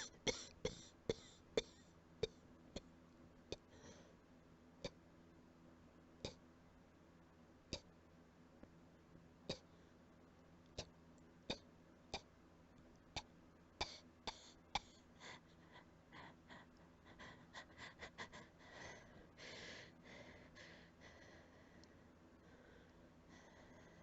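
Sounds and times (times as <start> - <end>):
person coughing: 0.0 - 1.3.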